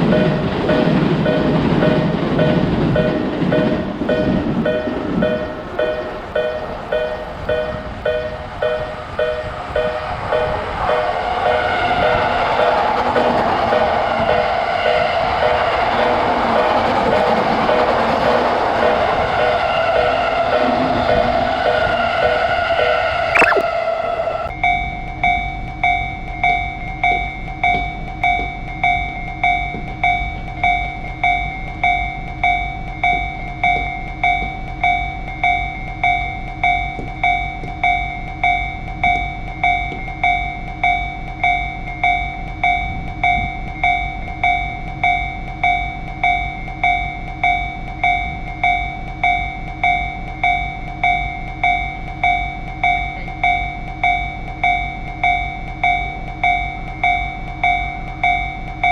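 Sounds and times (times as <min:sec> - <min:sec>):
railroad crossing alarm clanging: 0:00.0 - 0:22.4.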